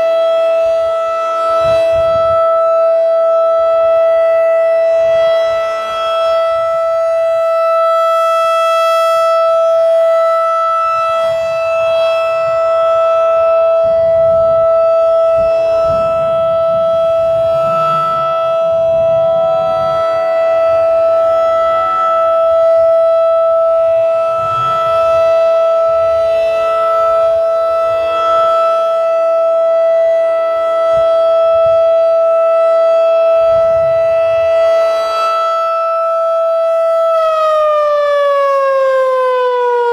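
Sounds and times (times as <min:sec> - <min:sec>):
other distant siren tones: 0:00.0 - 0:39.9
warning siren steady tone: 0:00.0 - 0:39.9.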